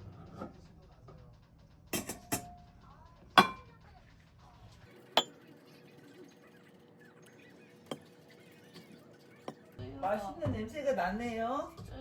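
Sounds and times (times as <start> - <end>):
tableware clinking: 2.0 - 2.5, 3.4 - 3.6.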